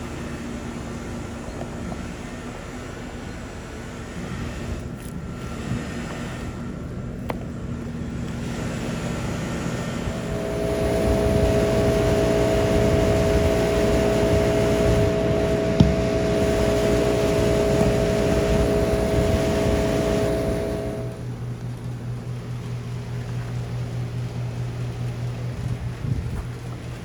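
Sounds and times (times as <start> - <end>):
air conditioner unit humming: 0.0 - 27.0.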